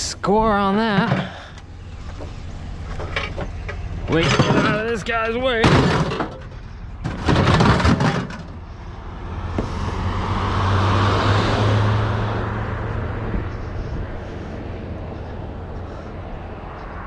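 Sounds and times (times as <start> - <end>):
loud knocks and clatter: 2.9 - 4.9, 5.6 - 8.6
car driving past: 8.8 - 17.0.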